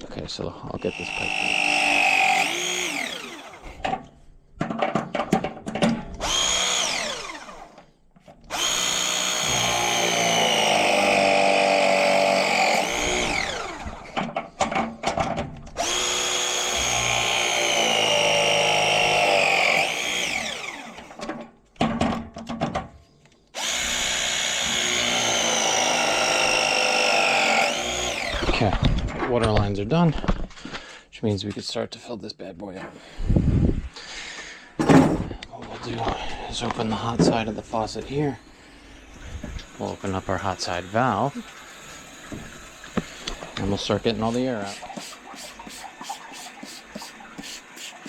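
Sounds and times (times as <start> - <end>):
short stuttering bursts: 0.8 - 3.6
press tool motor whine: 0.8 - 3.8, 6.2 - 7.8, 8.5 - 14.2, 15.8 - 21.2, 23.6 - 28.6.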